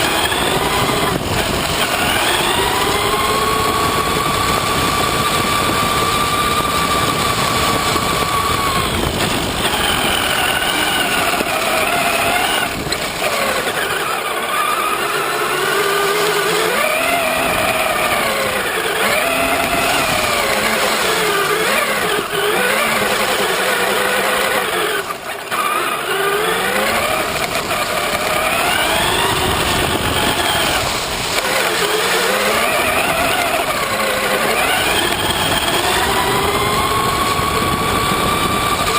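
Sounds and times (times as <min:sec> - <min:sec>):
toy truck electric motor whining: 0:00.0 - 0:38.9.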